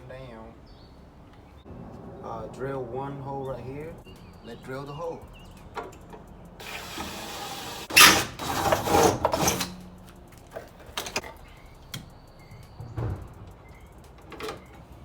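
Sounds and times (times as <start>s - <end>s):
drill grinding metal: 6.6s - 9.8s
power drill running: 6.6s - 9.8s
light knocks: 11.9s - 14.7s.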